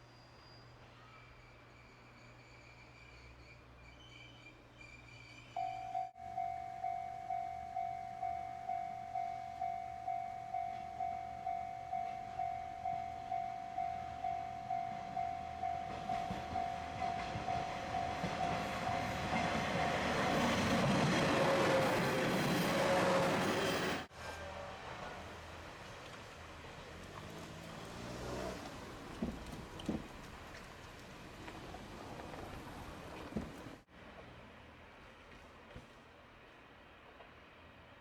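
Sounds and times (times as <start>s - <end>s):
diesel train passing: 0.1s - 38.0s
level crossing warning bell: 5.6s - 22.7s.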